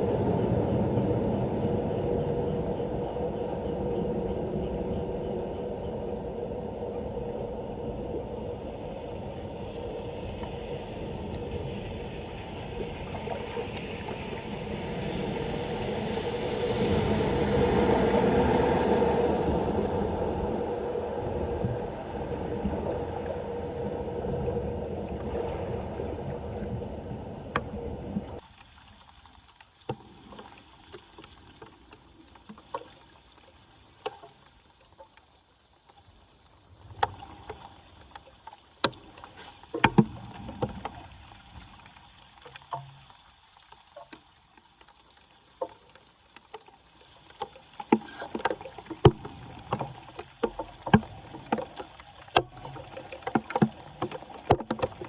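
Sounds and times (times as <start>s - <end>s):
floodwater rushing: 10.2s - 27.3s, 45.4s - 55.0s
water splashing: 10.2s - 55.0s.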